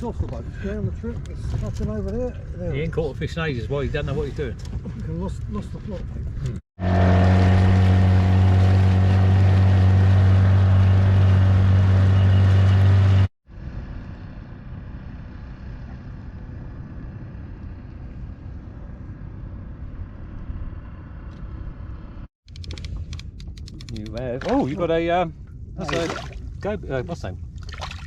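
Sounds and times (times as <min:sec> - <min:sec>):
wind and water rumble: 0:00.0 - 0:28.0
outboard motor running: 0:06.8 - 0:13.3.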